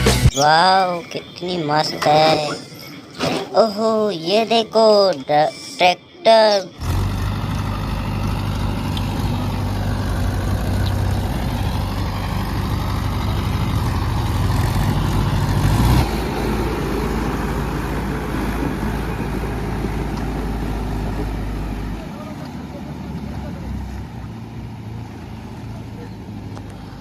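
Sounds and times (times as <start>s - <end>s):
tractor engine running: 0.0s - 0.6s, 6.7s - 27.0s.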